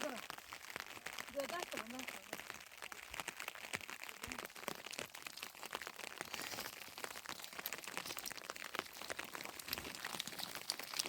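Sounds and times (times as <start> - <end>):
rain pattering: 0.0 - 11.0.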